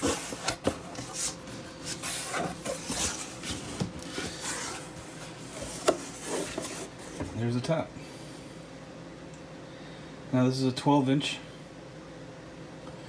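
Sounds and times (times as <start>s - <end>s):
cardboard rubbing and rustling: 0.0s - 7.4s.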